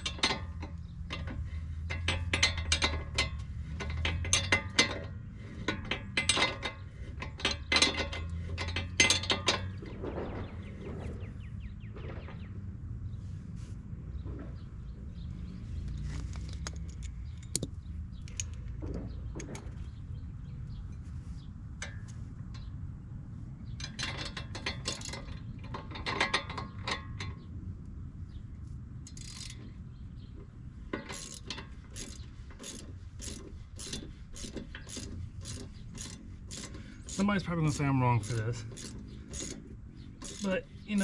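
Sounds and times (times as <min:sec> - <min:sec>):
ratchet wrench clicking: 0:29.1 - 0:29.6, 0:31.1 - 0:37.3, 0:38.2 - 0:41.0.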